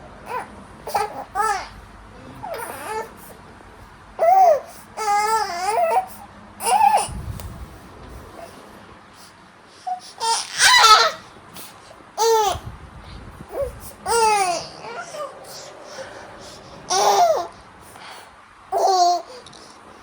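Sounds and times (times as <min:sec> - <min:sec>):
baby squealing and cooing: 0:00.3 - 0:01.8, 0:02.4 - 0:03.2, 0:04.2 - 0:07.1, 0:09.9 - 0:11.3, 0:12.2 - 0:12.6, 0:13.5 - 0:17.6.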